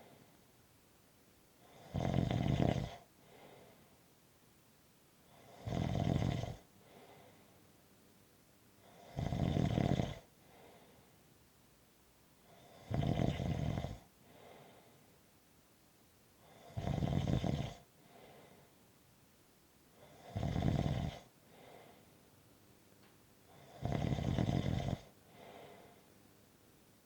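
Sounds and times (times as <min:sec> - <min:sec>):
faint breathing: 0:00.0 - 0:00.5, 0:03.2 - 0:04.0, 0:06.7 - 0:07.8, 0:10.3 - 0:11.3, 0:14.2 - 0:15.2, 0:17.9 - 0:18.8, 0:21.2 - 0:22.3, 0:25.1 - 0:26.2
person snoring: 0:01.6 - 0:03.0, 0:05.3 - 0:07.2, 0:08.8 - 0:10.3, 0:12.5 - 0:14.0, 0:16.5 - 0:17.8, 0:20.0 - 0:21.8, 0:23.5 - 0:26.0.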